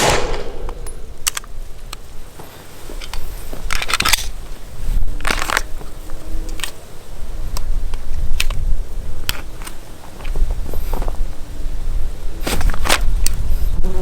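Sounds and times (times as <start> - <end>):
sharp rifle clicks: 0.0 - 1.5
low wind rumble: 0.0 - 1.9.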